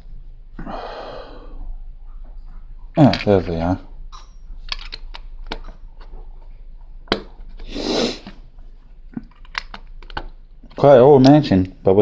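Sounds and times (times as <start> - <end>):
plastic bricks clicking: 3.0 - 3.3, 4.6 - 5.8, 9.2 - 11.4.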